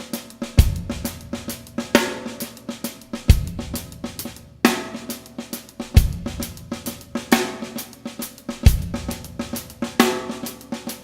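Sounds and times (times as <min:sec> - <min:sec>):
snare and hi-hat strokes: 0:00.0 - 0:11.0
bass drum kick: 0:00.6 - 0:01.5, 0:03.3 - 0:04.1, 0:06.0 - 0:06.8, 0:08.7 - 0:09.5.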